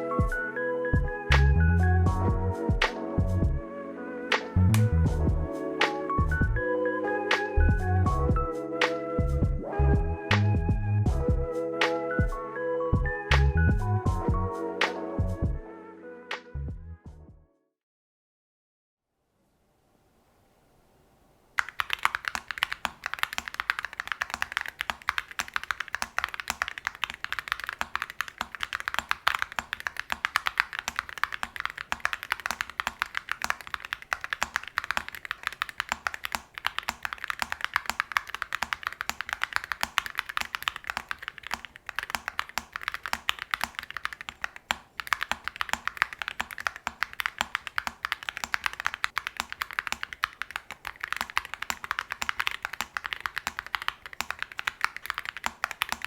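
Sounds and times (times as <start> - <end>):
fast typing on mechanical keyboard: 21.6 - 56.0.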